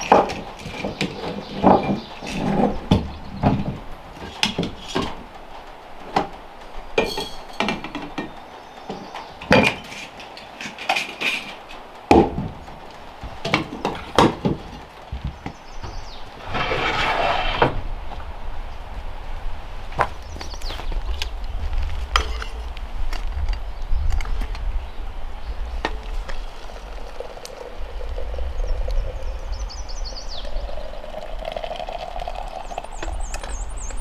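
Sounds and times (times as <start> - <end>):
scraping: 7.0 - 8.0, 15.8 - 18.3, 20.0 - 24.6
knocks and clinks of hard objects: 7.0 - 8.4, 22.1 - 23.6.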